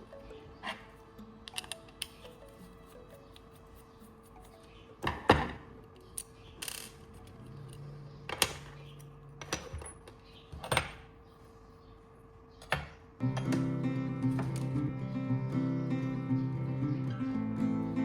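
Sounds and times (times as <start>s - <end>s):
guitar music: 13.2s - 18.0s.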